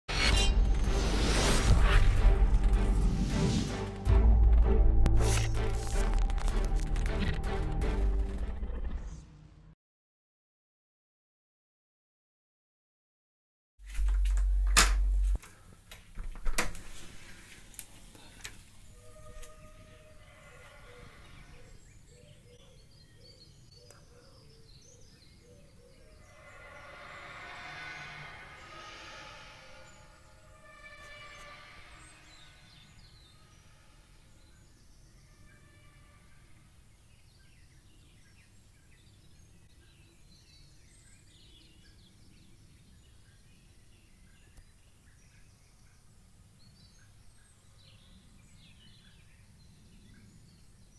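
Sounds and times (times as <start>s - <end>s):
birds chirping: 18.0s - 50.9s.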